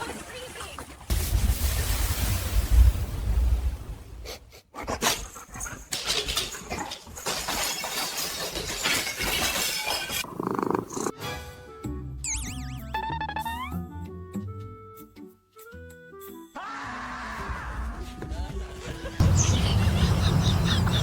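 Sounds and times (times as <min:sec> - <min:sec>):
clattering and crashing: 0:05.3 - 0:10.2
dog growling: 0:10.2 - 0:11.2.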